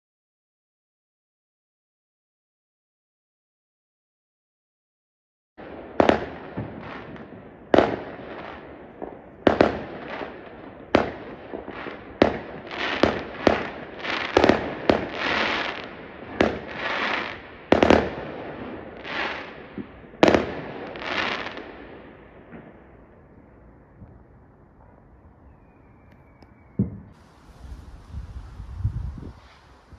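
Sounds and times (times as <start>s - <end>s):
fireworks banging: 5.6s - 22.8s, 26.2s - 29.9s
noisy firework bursts: 5.6s - 22.9s, 26.2s - 29.9s.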